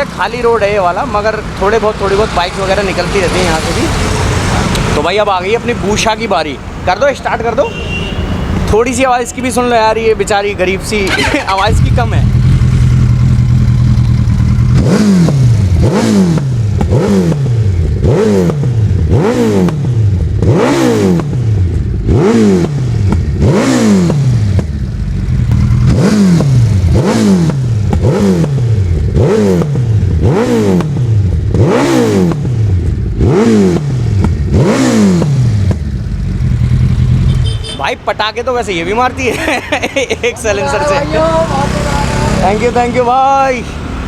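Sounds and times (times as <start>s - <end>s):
motorcycle engine revving: 0.0s - 6.1s, 10.9s - 37.8s, 40.5s - 44.0s
exhaust pops: 24.0s - 29.9s, 33.2s - 36.0s.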